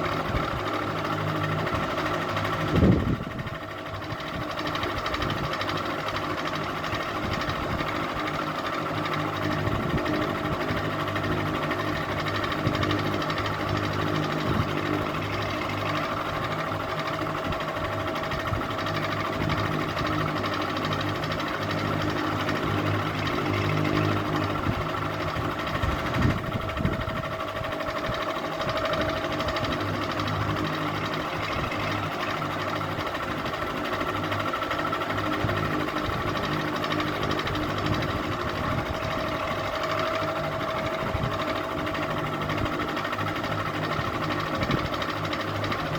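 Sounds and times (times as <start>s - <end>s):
ceiling fan motor hum: 0.0s - 45.9s.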